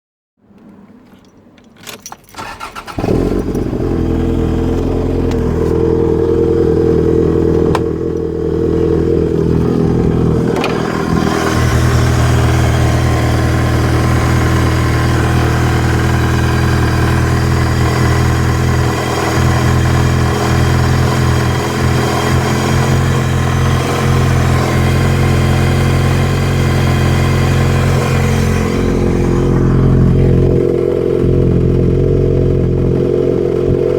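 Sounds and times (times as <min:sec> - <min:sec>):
engine cranking and starting: 0:01.1 - 0:05.8, 0:10.0 - 0:17.6
engine running: 0:02.4 - 0:33.9.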